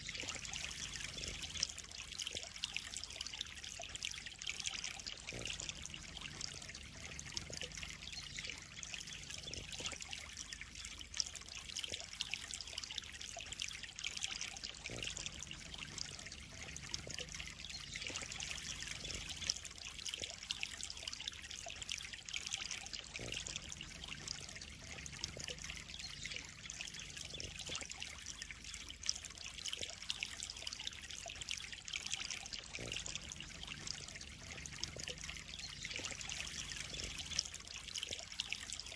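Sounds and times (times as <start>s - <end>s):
water trickling into pond: 0.0s - 38.9s.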